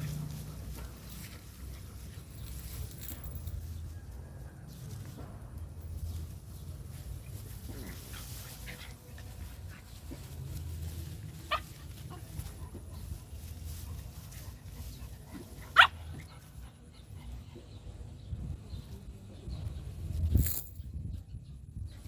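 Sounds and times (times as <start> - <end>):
low steady rumble: 0.0 - 4.0.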